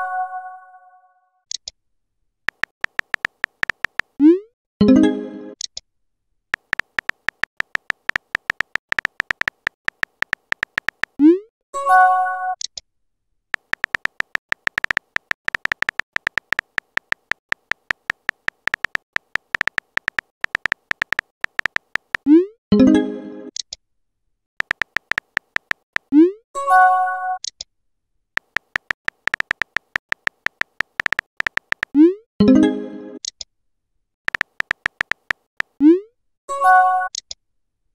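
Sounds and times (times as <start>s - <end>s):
phone keyboard clicking: 2.5s - 4.2s, 6.6s - 11.2s, 13.6s - 22.3s, 24.6s - 26.1s, 28.4s - 32.0s, 34.3s - 35.8s.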